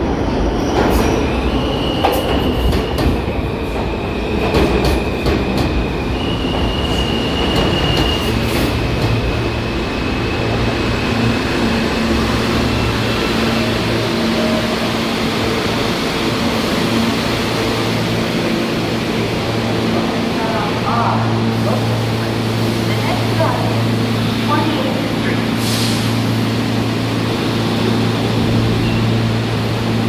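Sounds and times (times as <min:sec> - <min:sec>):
train low hum: 0:00.0 - 0:30.0
high steady wheel squeal: 0:05.8 - 0:10.4.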